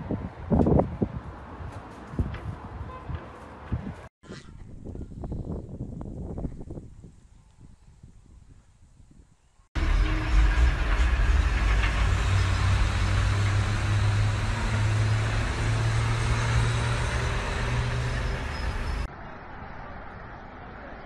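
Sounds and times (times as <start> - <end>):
motor vehicle engine rumbling: 9.8 - 19.1.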